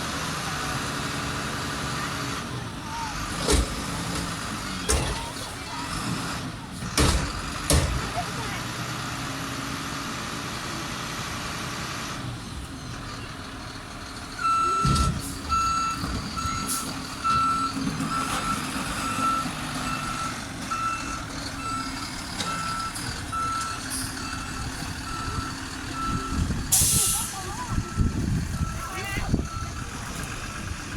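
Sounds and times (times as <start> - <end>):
diesel engine running: 0.0 - 30.9
truck backup alarm beeping: 13.1 - 30.9.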